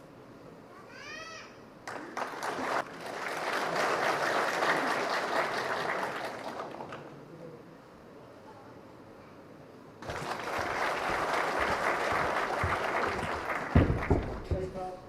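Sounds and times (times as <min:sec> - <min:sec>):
audience applause: 0:01.9 - 0:07.1, 0:10.0 - 0:14.6.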